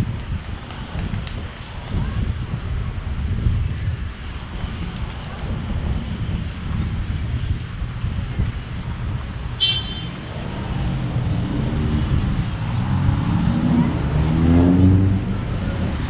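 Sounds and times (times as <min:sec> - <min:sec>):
traffic rumble: 0:00.0 - 0:16.0
vehicle engine accelerating past: 0:10.3 - 0:16.0.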